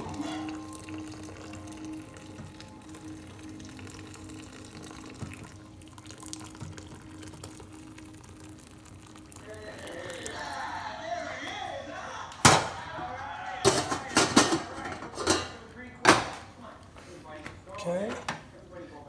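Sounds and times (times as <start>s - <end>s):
liquid trickling and splashing: 0.0s - 10.6s.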